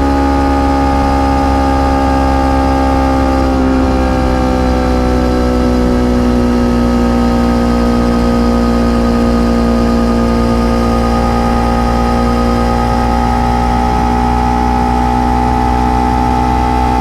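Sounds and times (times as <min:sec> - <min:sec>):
motorcycle engine running: 0:00.0 - 0:17.0
wind rumble: 0:10.3 - 0:17.0.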